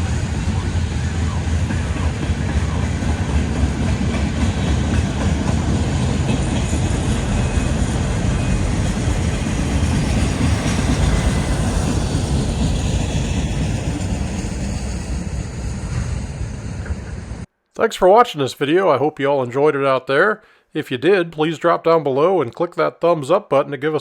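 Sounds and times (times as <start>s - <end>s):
wheel clickety-clack: 0.0s - 16.1s
freight train rumbling on rails: 0.0s - 17.5s.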